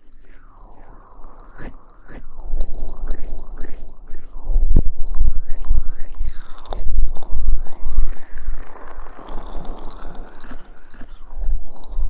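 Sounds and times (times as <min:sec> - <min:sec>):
fingers rubbing gel on microphone: 0:01.2 - 0:12.0.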